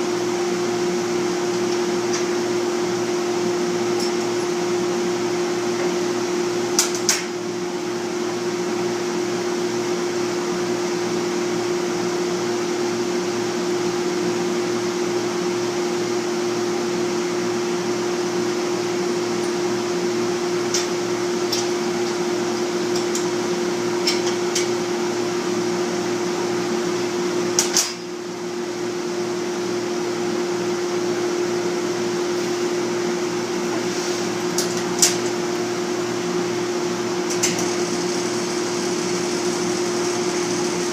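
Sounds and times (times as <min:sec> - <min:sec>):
lathe motor humming and pulsing: 0:35.4 - 0:40.9.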